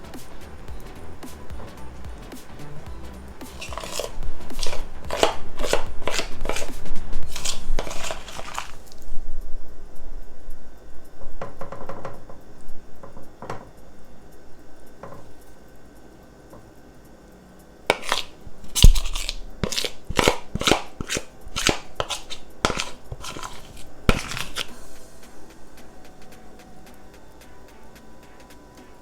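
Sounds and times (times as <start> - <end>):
metal spoon knocking and scraping: 3.4 - 9.0, 17.9 - 24.8.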